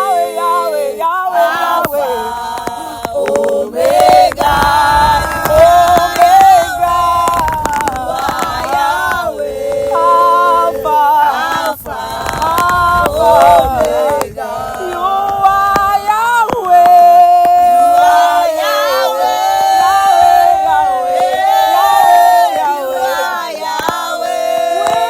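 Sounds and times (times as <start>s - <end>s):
voices singing unaccompanied: 0.0s - 25.0s.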